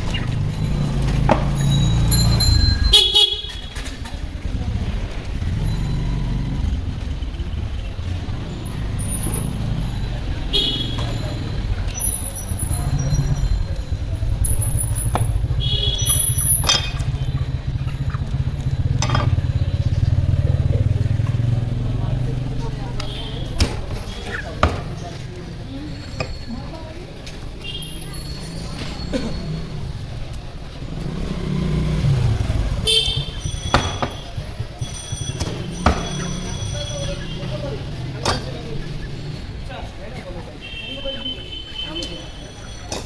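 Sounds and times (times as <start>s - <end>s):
vehicle engines running: 0.0s - 43.0s
car horns honking: 0.7s - 3.9s, 8.9s - 21.6s, 22.9s - 23.9s, 27.6s - 30.1s, 32.3s - 39.3s, 40.6s - 42.7s
sharp knocks: 33.2s - 36.4s.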